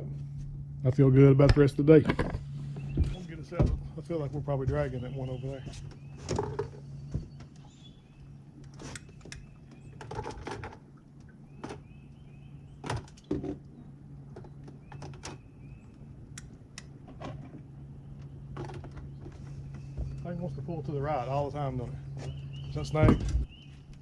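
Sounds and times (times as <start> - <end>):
electric trolling motor humming: 0.0 - 24.0
sharp knocks against boat: 1.4 - 7.7, 18.5 - 20.4, 22.2 - 23.6.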